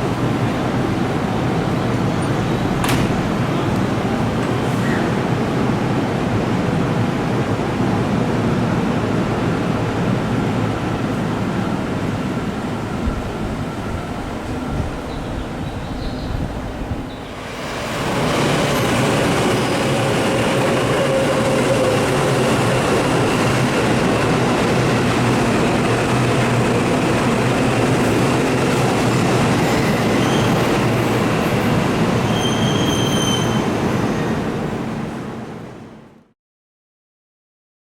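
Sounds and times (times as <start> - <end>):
train wheels rumbling on rail: 0.0 - 36.0
high wheel squeal: 29.6 - 30.7, 32.2 - 34.4.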